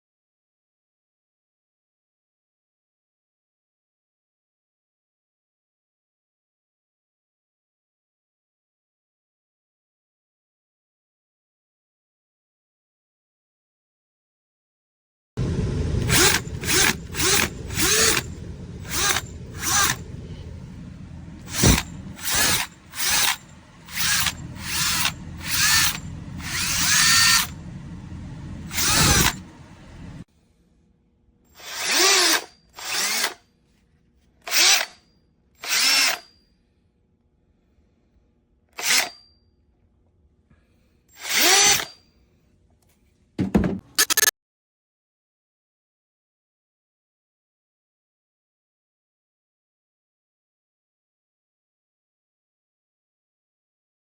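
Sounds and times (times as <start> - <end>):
cordless drill whirring: 15.4 - 30.2, 31.6 - 33.4, 35.6 - 36.2, 38.8 - 39.1, 41.2 - 41.9, 43.6 - 44.3.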